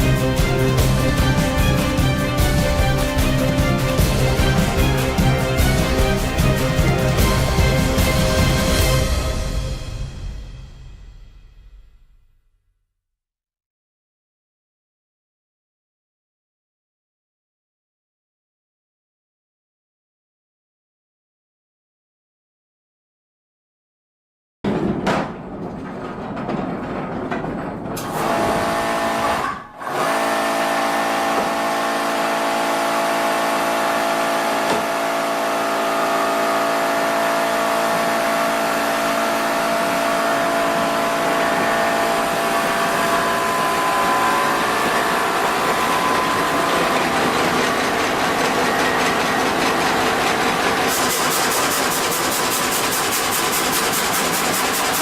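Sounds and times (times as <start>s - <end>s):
wood-processing machinery humming: 0.0s - 9.5s, 28.0s - 55.0s
fast rhythmic machine sound: 0.0s - 9.6s, 37.6s - 55.0s.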